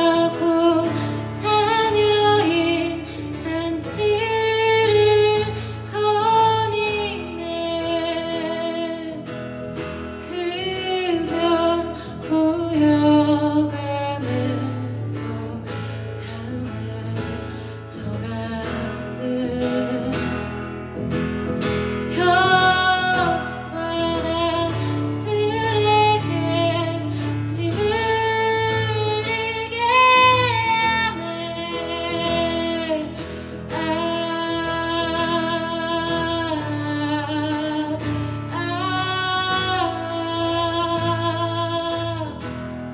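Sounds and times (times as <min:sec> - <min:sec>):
person singing: 0:00.0 - 0:09.4, 0:22.1 - 0:42.8
guitar accompaniment: 0:00.0 - 0:42.9.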